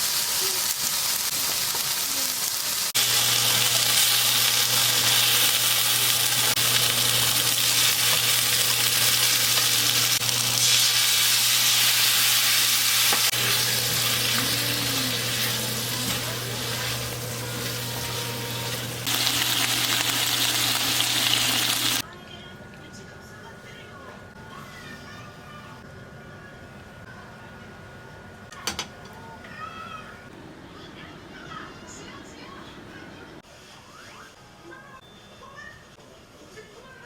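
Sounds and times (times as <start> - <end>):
food sizzling in frying pan: 0.0 - 22.0.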